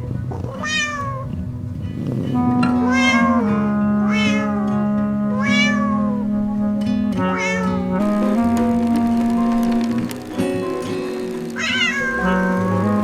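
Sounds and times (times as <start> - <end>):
cat meowing: 0.0 - 1.4, 2.6 - 6.2, 7.2 - 7.9, 11.6 - 12.9
background music with held notes: 0.0 - 13.0.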